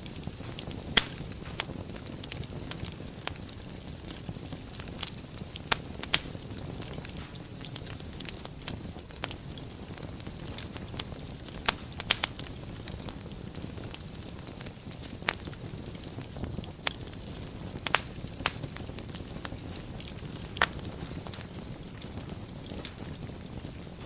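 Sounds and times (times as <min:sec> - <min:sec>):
fire crackling and popping: 0:00.0 - 0:24.0.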